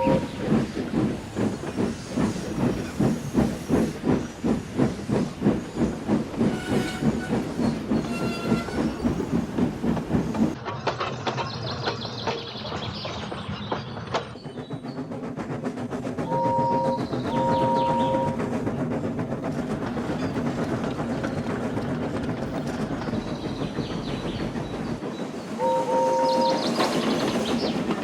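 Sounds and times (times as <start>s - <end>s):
steam whistle: 0.0s - 0.4s, 16.3s - 18.4s, 25.6s - 26.7s
steam locomotive wheels clattering: 0.0s - 28.0s.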